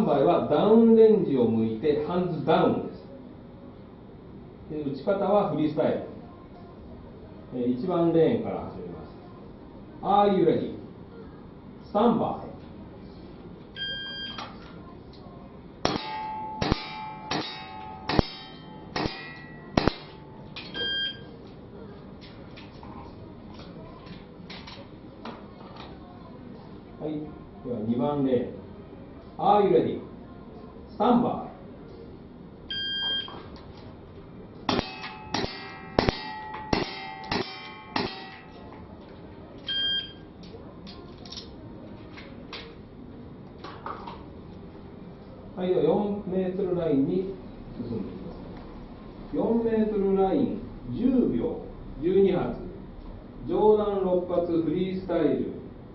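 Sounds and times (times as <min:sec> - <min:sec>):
metal target ringing: 0:15.8 - 0:20.8, 0:34.7 - 0:38.7
revolver shots with metallic clang: 0:15.9 - 0:20.2, 0:34.7 - 0:38.6.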